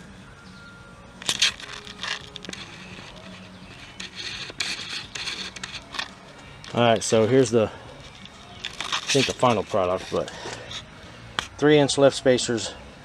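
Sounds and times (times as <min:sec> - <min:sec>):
scraping and rustling: 0:01.2 - 0:11.5.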